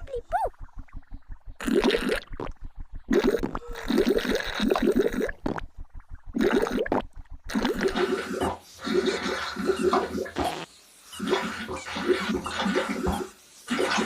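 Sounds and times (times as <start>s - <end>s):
cartoon bubbling slurp: 0.3s - 5.7s, 6.3s - 14.0s.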